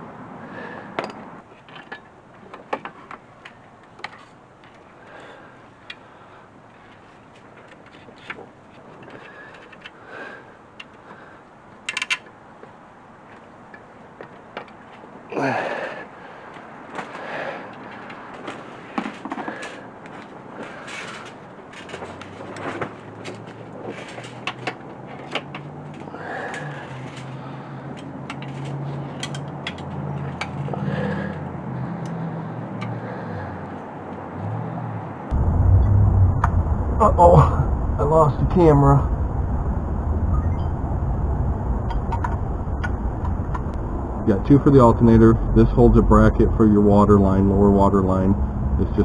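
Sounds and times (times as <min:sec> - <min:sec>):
steady low hum: 0:35.3 - 0:49.0.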